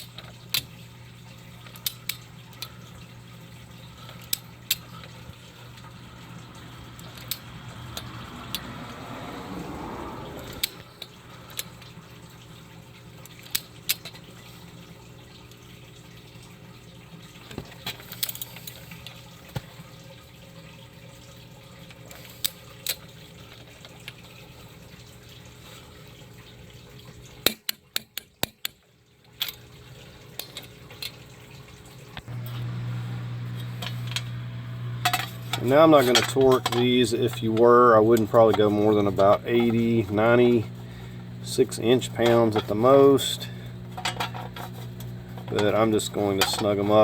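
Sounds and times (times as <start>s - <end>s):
hand tools clicking: 7.0s - 8.7s
steady low hum: 32.2s - 47.0s.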